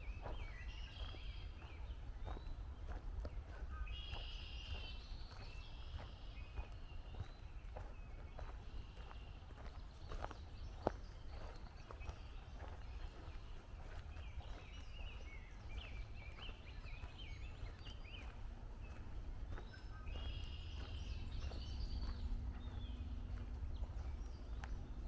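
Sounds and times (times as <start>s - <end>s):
soft footsteps on trail: 0.0s - 25.0s
songbirds chirping and trilling: 0.0s - 25.0s
steady low rumble: 14.0s - 25.0s.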